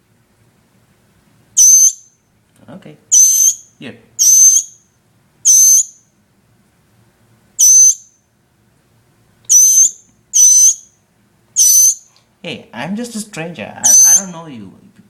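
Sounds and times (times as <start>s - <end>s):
fledgling bird peeping: 1.6s - 2.1s, 3.1s - 4.8s, 5.4s - 6.0s, 7.6s - 8.2s, 9.5s - 11.0s, 11.6s - 12.2s, 13.8s - 14.4s.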